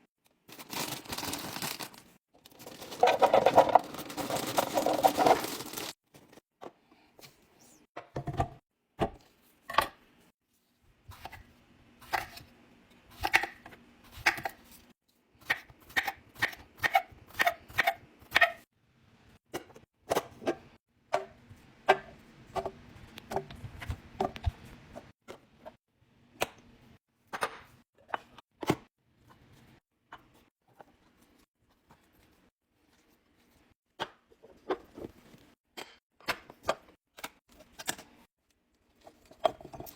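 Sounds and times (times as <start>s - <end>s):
containers clicking and clinking: 0.5s - 6.0s.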